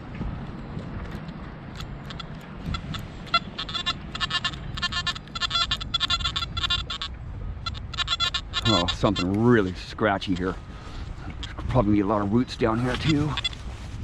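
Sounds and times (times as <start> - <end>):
metal detector choppy high beeping: 1.8 - 7.1, 7.7 - 9.4, 12.8 - 13.6.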